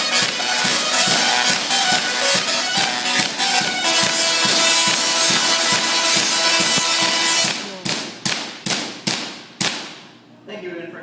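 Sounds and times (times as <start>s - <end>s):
tesla coil sparks buzzing a tune: 0.0s - 7.6s
sharp spark cracks: 3.1s - 10.1s.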